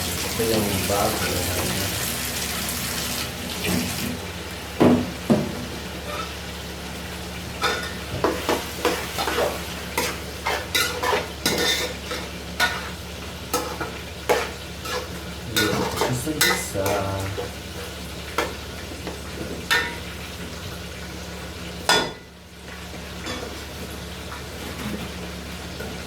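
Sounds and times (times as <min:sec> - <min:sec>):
meat sizzling in a pan: 0:00.0 - 0:26.0
utensil knocking and scraping pan: 0:13.6 - 0:17.6.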